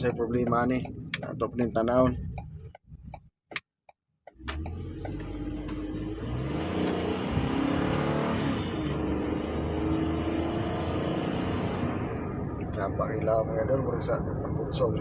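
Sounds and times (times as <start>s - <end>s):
van engine accelerating hard: 4.3s - 15.0s.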